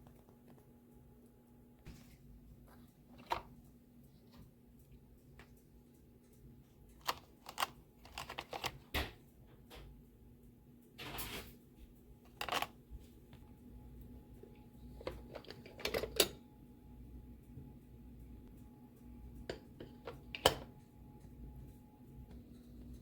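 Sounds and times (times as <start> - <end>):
faint steady hum: 0.0 - 23.0
objects clicking and knocking: 6.9 - 9.9, 12.3 - 12.8.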